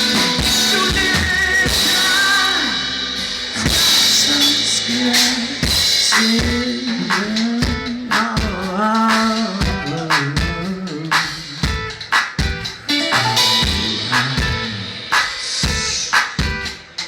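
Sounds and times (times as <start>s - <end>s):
bending lead melody: 0.0s - 5.0s, 12.8s - 15.1s
drum hits: 0.0s - 17.0s
live rock band playing: 0.0s - 17.0s.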